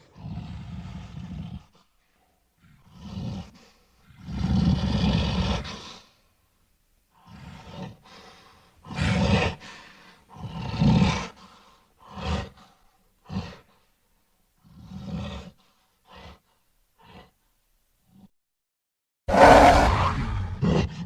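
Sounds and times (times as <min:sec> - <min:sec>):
person making monster growls: 0:19.3 - 0:21.0.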